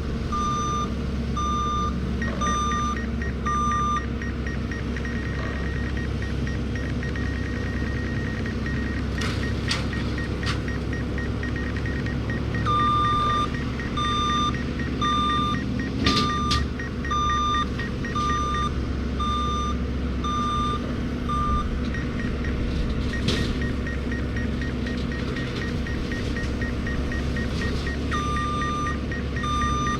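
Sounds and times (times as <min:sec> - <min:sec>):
diesel engine running: 0:00.0 - 0:29.9
loud electronic beep: 0:00.4 - 0:04.1, 0:10.9 - 0:21.6
faint fast beeping: 0:00.4 - 0:29.9.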